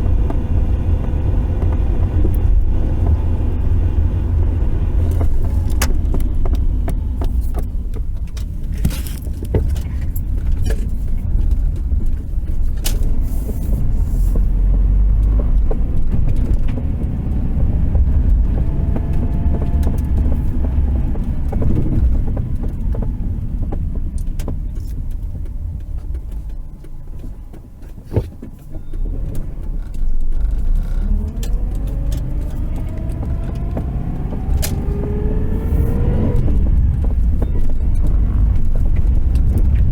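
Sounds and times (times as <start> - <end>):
car engine and road rumble: 0.0 - 39.9
sharp pops from dashboard: 14.4 - 39.9.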